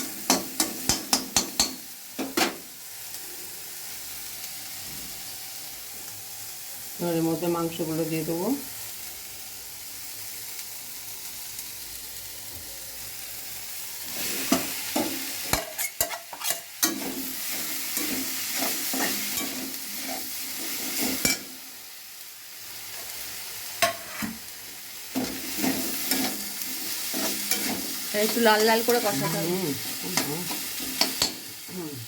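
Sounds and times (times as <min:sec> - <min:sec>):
chicken sizzling in oil: 0:00.0 - 0:32.0
spatula knocking and scraping pan: 0:00.2 - 0:02.6, 0:14.4 - 0:21.5, 0:23.8 - 0:24.4, 0:25.1 - 0:31.5.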